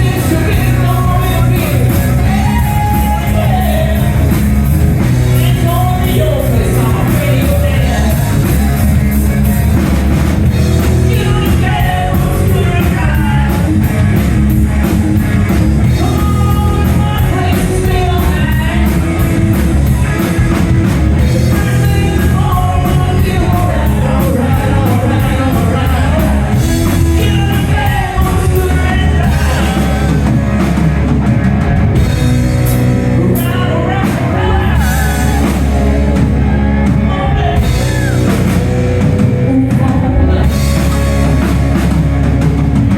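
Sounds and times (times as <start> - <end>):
rock band playing: 0.0 - 42.9.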